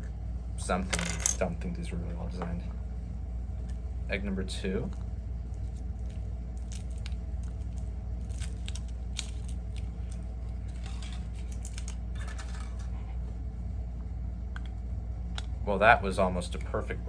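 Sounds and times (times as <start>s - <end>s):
steady low hum: 0.0s - 17.0s
foil wrapper crinkling and tearing: 5.6s - 12.8s.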